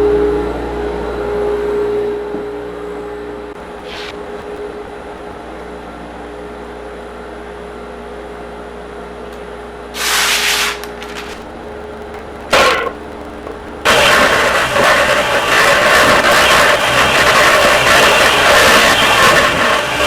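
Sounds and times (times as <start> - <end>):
sander hissing rushes: 3.6 - 5.8, 10.0 - 20.0
orbital sander motor hum: 11.2 - 20.0.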